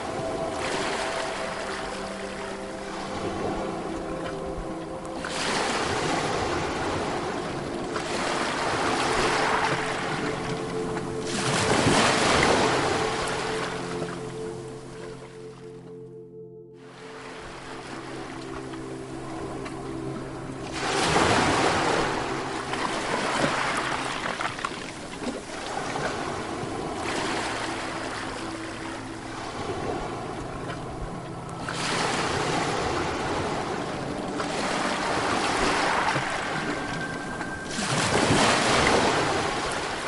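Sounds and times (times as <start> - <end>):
waves breaking on beach: 0.0 - 15.2, 17.1 - 40.0
soft low tones: 0.0 - 40.0.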